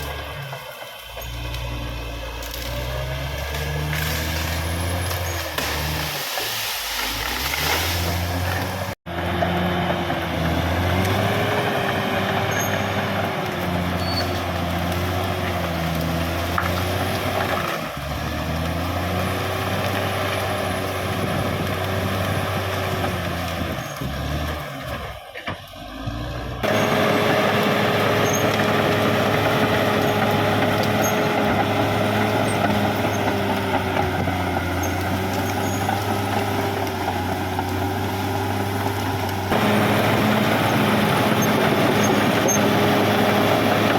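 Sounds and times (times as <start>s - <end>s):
bulldozer diesel engine running: 0.0s - 6.1s, 7.0s - 43.9s.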